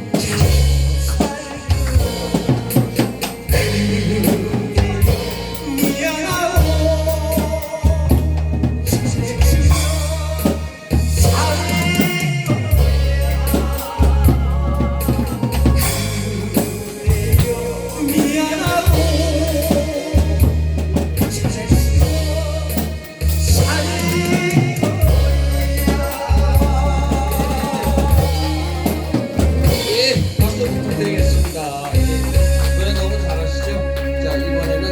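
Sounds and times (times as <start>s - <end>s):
woman singing with vibrato: 0.0s - 8.2s, 23.5s - 32.7s
drum kit: 0.0s - 34.9s
heavy bass: 0.0s - 34.9s.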